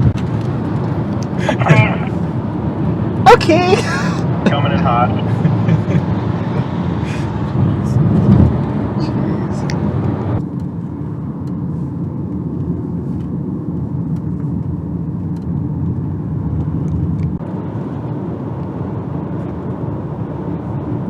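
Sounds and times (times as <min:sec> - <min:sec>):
car engine and tyre rumble: 0:00.0 - 0:21.0.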